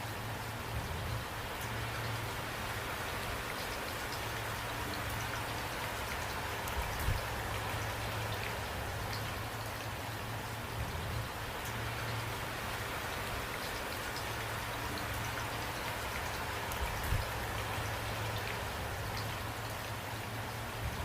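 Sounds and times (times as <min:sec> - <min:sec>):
steady rain hiss: 0:00.0 - 0:21.0
raindrops ticking: 0:01.1 - 0:21.0.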